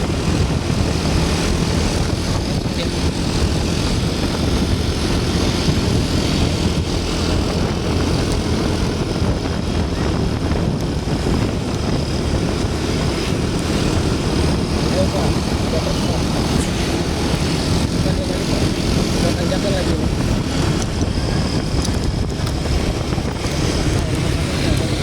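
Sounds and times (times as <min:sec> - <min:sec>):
bus engine droning: 0:00.0 - 0:25.0
road noise: 0:00.0 - 0:25.0.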